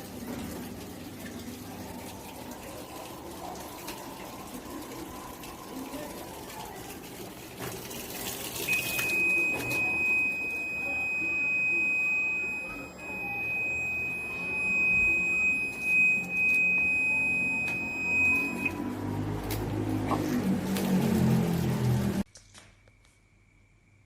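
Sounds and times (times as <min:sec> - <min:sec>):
steady high-pitched tone: 0:08.7 - 0:18.9.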